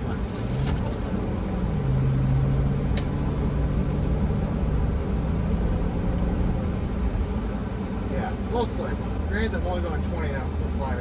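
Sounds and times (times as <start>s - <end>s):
car engine humming: 0.0s - 11.0s
road rumble: 0.0s - 11.0s.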